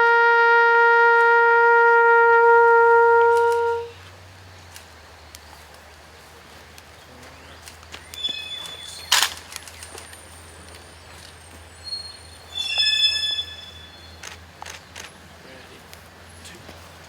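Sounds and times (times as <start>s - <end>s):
short high chirps: 8.2s - 9.2s, 11.8s - 14.3s.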